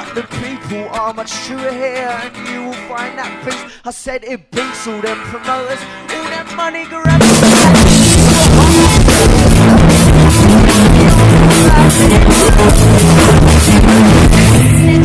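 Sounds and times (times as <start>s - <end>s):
rock band playing: 4.6s - 15.0s
drum kit beating: 6.3s - 15.0s.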